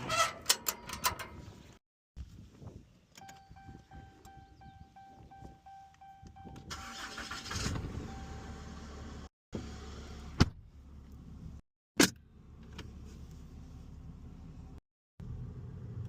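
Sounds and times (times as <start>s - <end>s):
vehicle warning chime: 3.2s - 7.4s, 8.1s - 8.7s
truck engine cranking: 6.6s - 8.1s.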